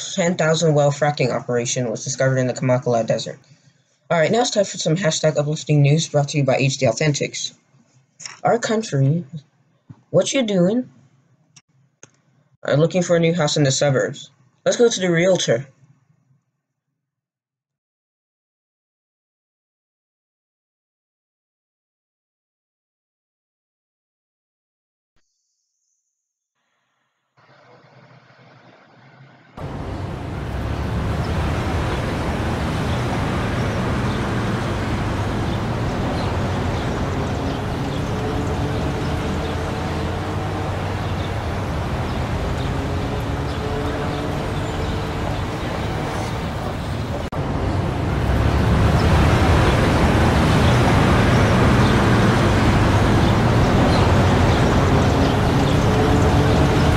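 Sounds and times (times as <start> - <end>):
loud low rumbling: 29.6 - 55.6.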